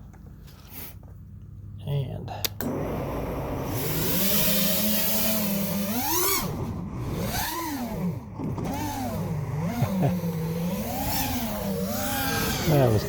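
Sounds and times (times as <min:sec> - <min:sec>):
drone motors whining: 0:02.6 - 0:13.0.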